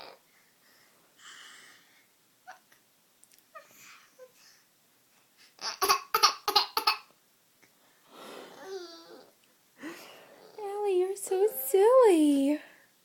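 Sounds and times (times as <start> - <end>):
baby babbling coo: 8.5 - 9.4.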